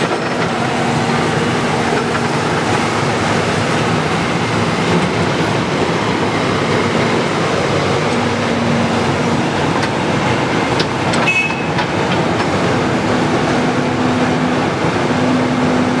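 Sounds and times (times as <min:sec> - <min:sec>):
excavator running: 0:00.0 - 0:16.0
brief high tone: 0:11.2 - 0:11.8.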